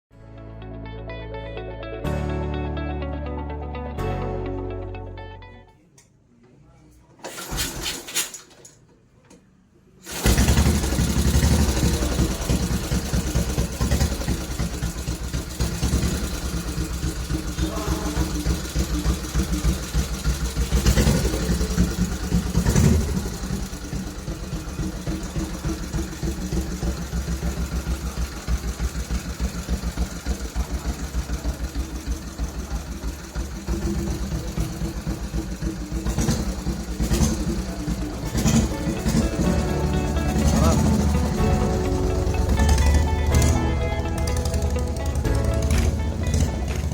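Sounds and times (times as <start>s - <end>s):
motorcycle throttle blips: 9.3s - 46.9s
motorcycle engine idling: 10.0s - 46.9s.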